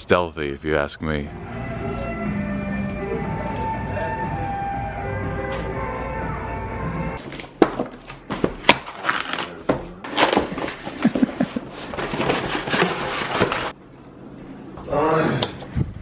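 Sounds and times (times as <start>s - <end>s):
rustling and crinkling handling noise: 7.2s - 13.8s.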